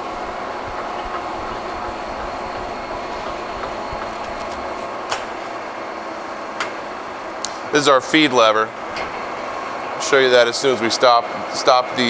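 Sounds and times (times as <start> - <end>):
lathe whirring: 0.0 - 7.4.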